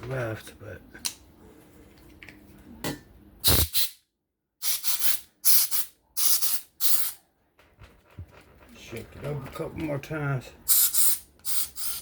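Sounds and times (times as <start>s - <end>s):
compressed air hissing blasts: 3.4s - 4.0s, 4.6s - 7.2s, 10.7s - 12.0s.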